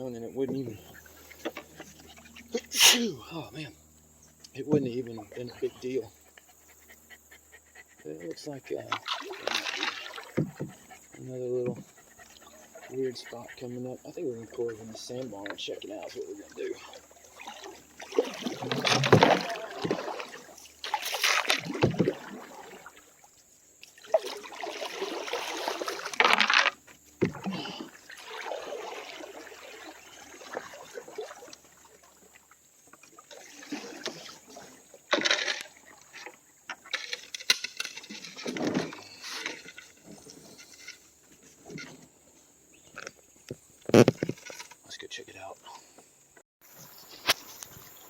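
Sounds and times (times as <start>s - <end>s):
canoe paddle strokes: 0.0s - 3.5s, 4.3s - 44.8s, 46.7s - 48.0s
water splashing around hull: 8.2s - 42.0s.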